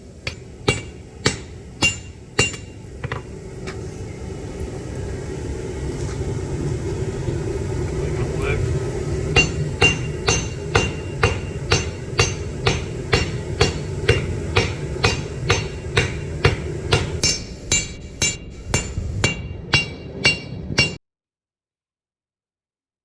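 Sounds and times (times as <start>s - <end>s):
steady low hum: 0.0s - 21.0s
hammer striking steel on anvil: 0.2s - 3.3s, 9.3s - 21.0s.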